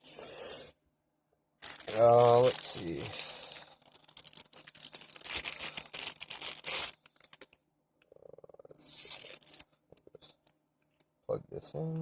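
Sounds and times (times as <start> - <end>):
plastic packaging crinkling: 1.6 - 7.6, 8.7 - 9.7.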